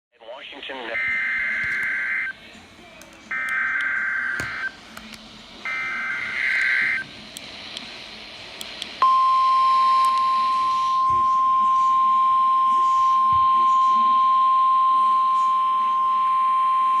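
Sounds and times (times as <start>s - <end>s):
steady attention tone: 5.6s - 7.1s, 9.0s - 17.0s.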